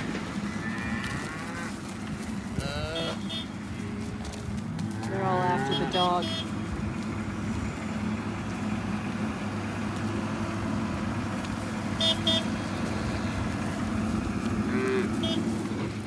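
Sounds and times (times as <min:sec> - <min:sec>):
vehicle engine running: 0:00.0 - 0:16.0
horn toots: 0:02.6 - 0:03.6, 0:05.1 - 0:06.6, 0:12.0 - 0:13.4, 0:14.7 - 0:15.9.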